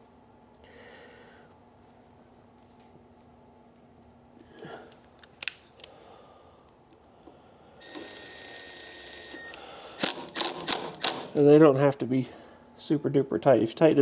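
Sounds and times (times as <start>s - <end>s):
electric driver motor whirring: 7.8s - 11.4s.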